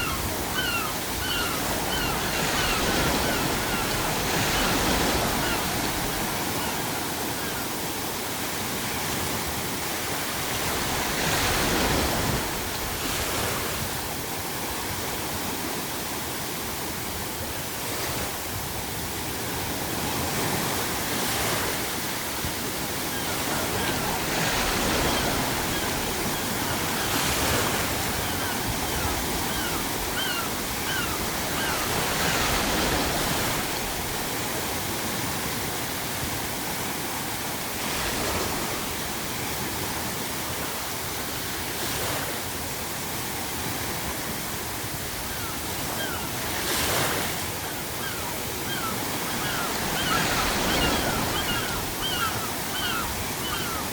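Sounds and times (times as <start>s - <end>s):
seagull calls: 0.0s - 7.7s, 23.0s - 33.2s, 45.2s - 46.9s, 47.6s - 53.9s
ocean waves breaking: 0.0s - 53.9s.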